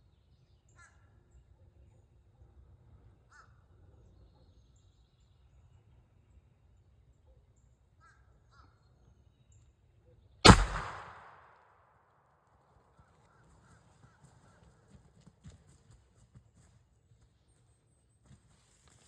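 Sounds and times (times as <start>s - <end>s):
gunshot with echo: 10.5s - 11.5s.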